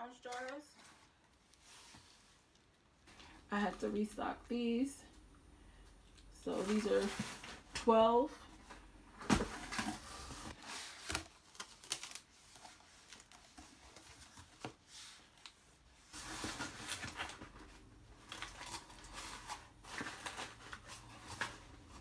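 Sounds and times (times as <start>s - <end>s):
packaging rustling: 9.2s - 22.0s.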